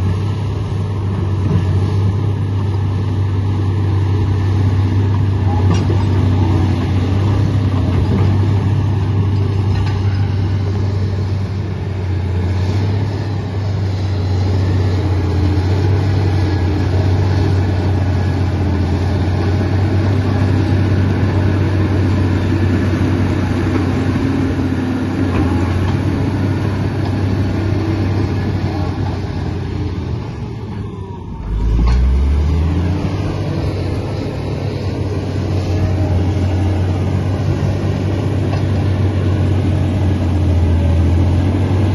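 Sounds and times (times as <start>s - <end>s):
bulldozer diesel engine droning: 0.0s - 41.9s.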